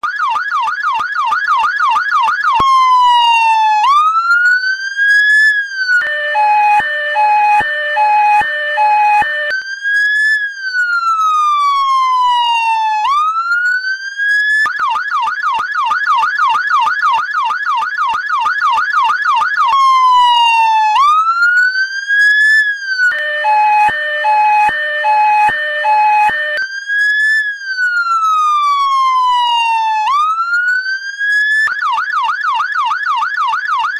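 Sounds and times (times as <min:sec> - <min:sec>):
fire engine siren: 0:00.0 - 0:33.9.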